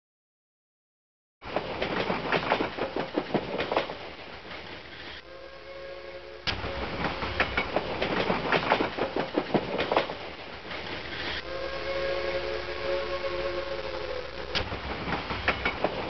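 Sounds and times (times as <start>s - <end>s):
train wheels clattering over rails: 1.4s - 5.2s, 6.5s - 11.4s, 14.6s - 16.0s
multi-tone train horn: 5.2s - 9.2s, 11.3s - 16.0s.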